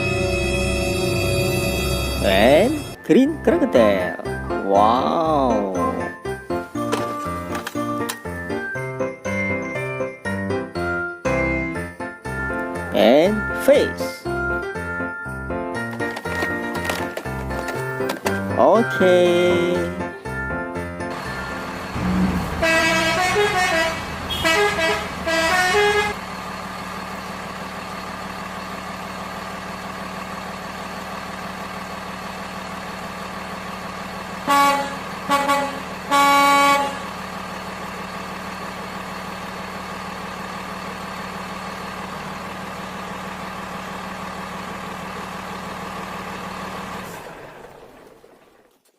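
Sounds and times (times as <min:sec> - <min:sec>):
truck engine drone: 0:00.0 - 0:48.9
truck horn honking: 0:21.1 - 0:26.2, 0:34.3 - 0:37.3.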